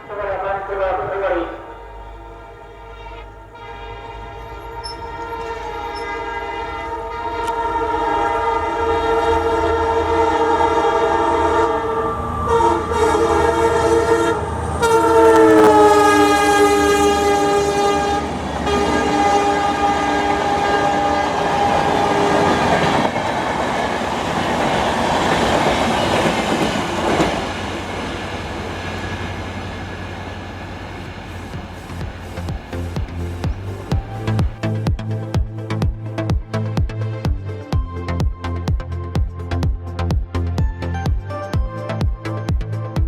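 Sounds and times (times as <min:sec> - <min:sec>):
locomotive air horn blasts: 0:00.0 - 0:23.1, 0:28.0 - 0:34.7
train rumble and wheel clatter: 0:00.0 - 0:43.0.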